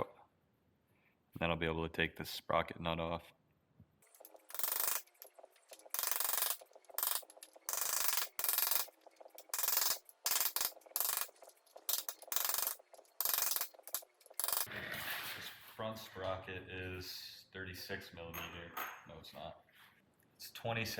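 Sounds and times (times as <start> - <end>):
metal tool scraping metal: 4.1 - 15.4.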